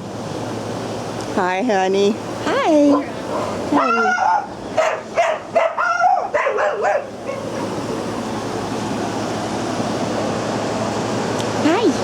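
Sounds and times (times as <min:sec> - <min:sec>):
air conditioning whir: 0:00.0 - 0:12.0
small dogs barking and yipping: 0:02.9 - 0:08.0.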